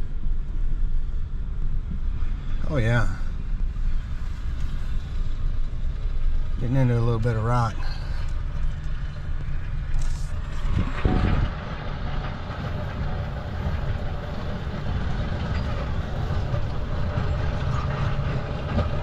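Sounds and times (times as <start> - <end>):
diesel engine under load: 3.9 - 19.0.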